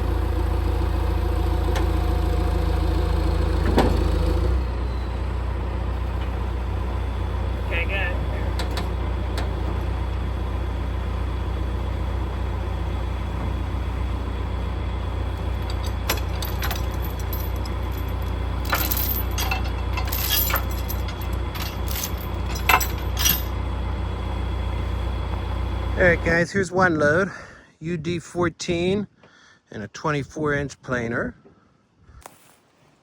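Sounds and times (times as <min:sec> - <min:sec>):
truck engine droning: 0:00.0 - 0:27.5
metallic clinks and jingles: 0:15.6 - 0:23.6.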